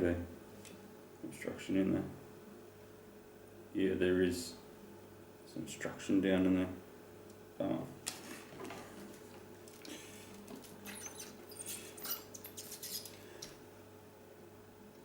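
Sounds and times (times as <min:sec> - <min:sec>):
faint steady hum: 0:00.0 - 0:15.0
tool scratching inside metal plug: 0:10.8 - 0:13.2.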